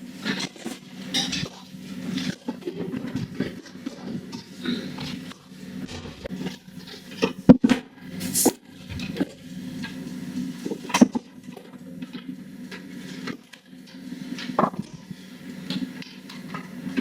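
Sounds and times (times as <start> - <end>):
steady low hum: 5.3 - 7.2.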